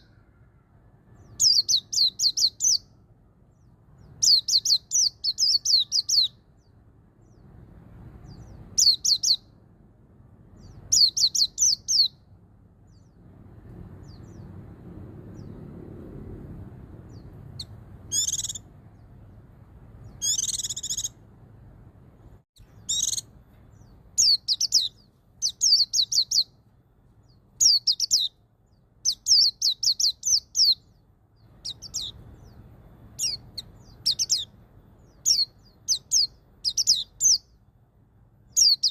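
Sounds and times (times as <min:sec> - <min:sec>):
harsh buzzy bird calls: 0:00.0 - 0:00.6, 0:01.2 - 0:03.0, 0:03.6 - 0:07.5, 0:17.0 - 0:19.3, 0:20.0 - 0:21.3, 0:22.6 - 0:26.6, 0:27.2 - 0:37.7, 0:38.5 - 0:38.9
bird singing high phrases: 0:00.0 - 0:09.6, 0:10.5 - 0:13.3, 0:17.0 - 0:19.4, 0:20.0 - 0:21.3, 0:22.6 - 0:37.8, 0:38.5 - 0:38.9.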